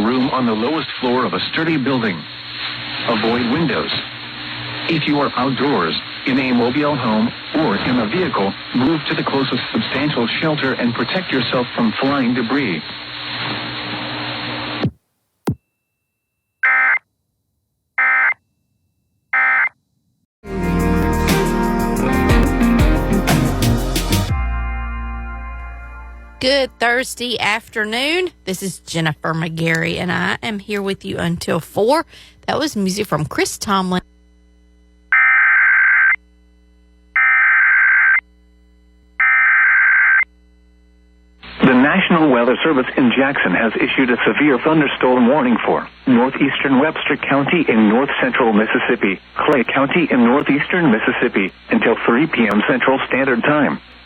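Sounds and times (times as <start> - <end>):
music: 20.4 - 27.2
buzzy digital data tone bursts: 35.1 - 36.3, 37.1 - 38.4, 39.2 - 40.5.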